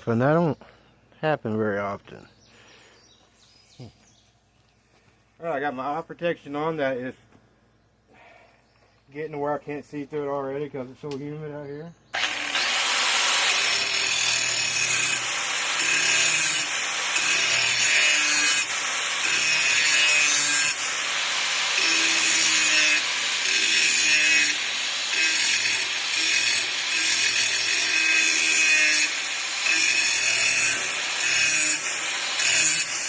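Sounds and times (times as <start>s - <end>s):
angle grinder grinding steel: 12.2s - 33.0s.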